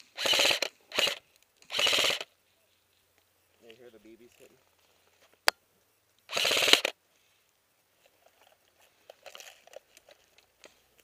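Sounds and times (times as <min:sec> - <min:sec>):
rapid airsoft gunfire: 0:00.2 - 0:02.3, 0:06.3 - 0:06.9.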